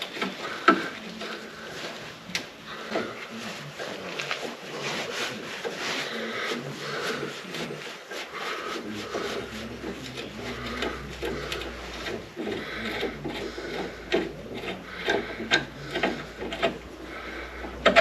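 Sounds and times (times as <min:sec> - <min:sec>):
metal scraping and rubbing: 0:00.0 - 0:18.0
steady low hum: 0:00.0 - 0:18.0.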